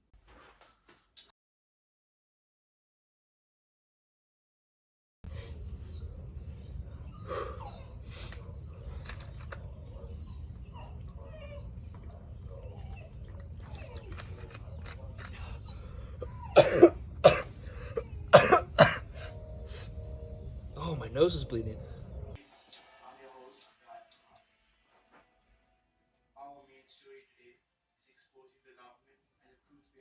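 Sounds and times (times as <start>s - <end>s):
low steady hum: 15.4s - 22.4s
person coughing: 16.5s - 19.3s.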